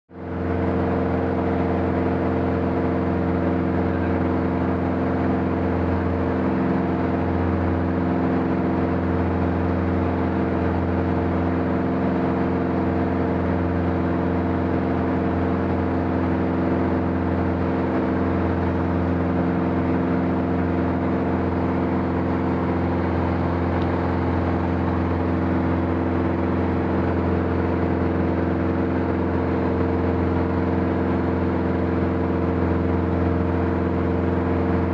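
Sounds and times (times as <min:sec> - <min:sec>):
aircraft engine drone: 0:00.2 - 0:34.9.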